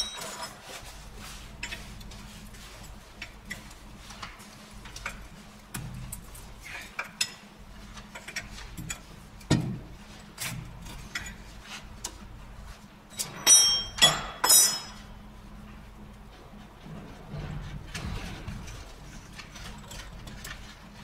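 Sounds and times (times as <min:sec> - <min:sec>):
metal tools clinking and clanking: 0:00.0 - 0:00.6, 0:13.1 - 0:15.1.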